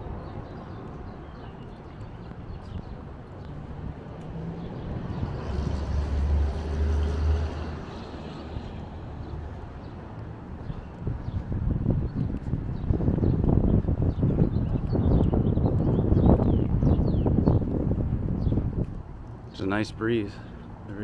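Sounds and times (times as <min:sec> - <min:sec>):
vehicle engine passing: 0:04.3 - 0:09.1.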